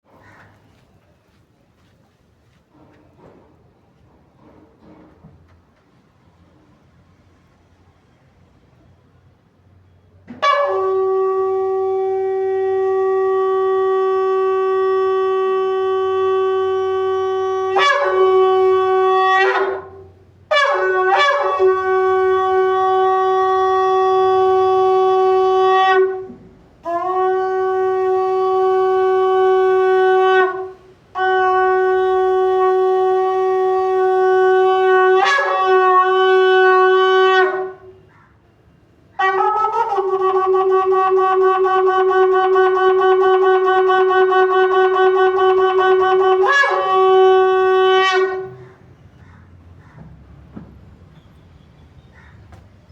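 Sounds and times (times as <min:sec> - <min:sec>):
shofar blasts: 0:10.3 - 0:38.1, 0:39.2 - 0:48.8.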